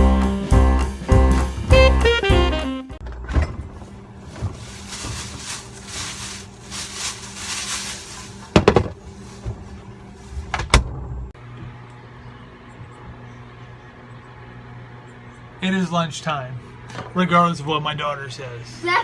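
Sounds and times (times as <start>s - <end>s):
steady low hum: 3.0s - 19.0s
rustling: 3.7s - 10.5s.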